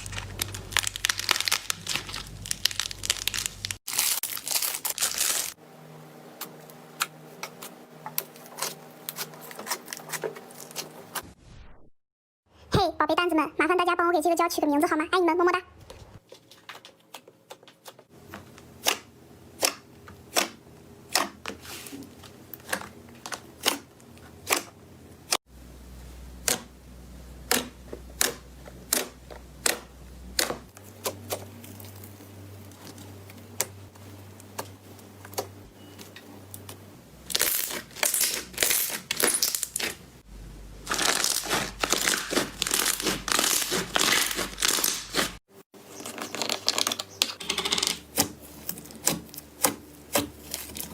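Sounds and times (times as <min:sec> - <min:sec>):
slime popping and crackling: 0:00.0 - 0:05.6, 0:37.3 - 0:40.0, 0:40.8 - 0:45.4.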